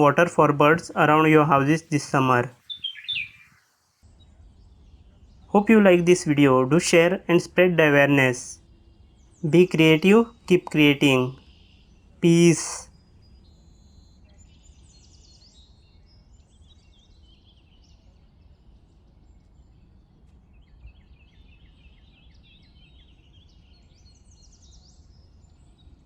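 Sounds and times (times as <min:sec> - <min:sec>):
small birds chirping: 0:00.0 - 0:03.5.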